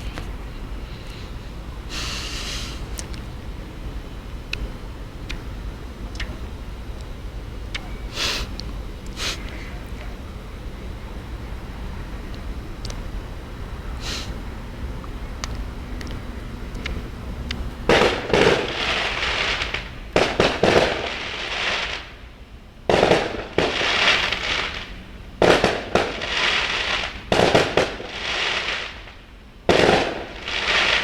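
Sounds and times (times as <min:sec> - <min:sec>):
fireworks bangs: 0:17.8 - 0:22.2, 0:22.9 - 0:31.0.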